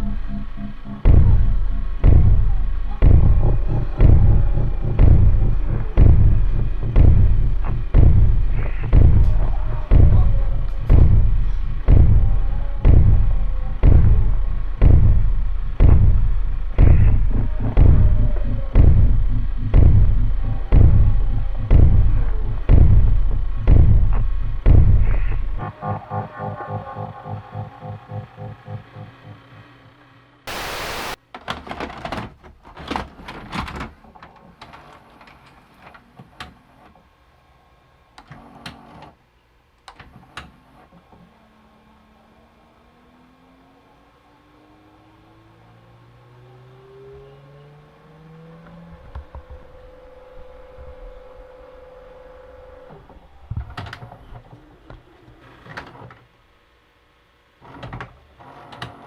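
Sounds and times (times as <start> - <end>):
steady hum: 0.0 - 31.2, 48.3 - 57.3
dull thumps: 1.0 - 25.6
static-like hiss: 30.3 - 31.2.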